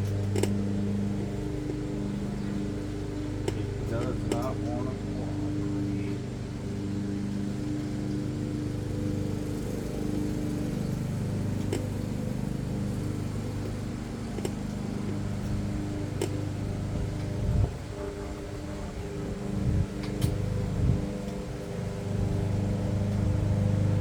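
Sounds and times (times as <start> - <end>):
low machine hum: 0.0 - 24.0.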